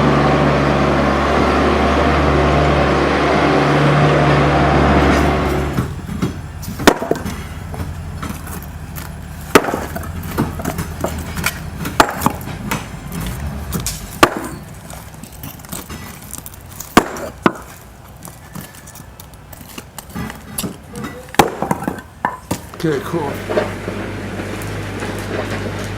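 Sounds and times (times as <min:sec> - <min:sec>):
faint skid-steer engine: 0:00.0 - 0:25.9
concrete pieces knocking and clattering: 0:05.7 - 0:25.9.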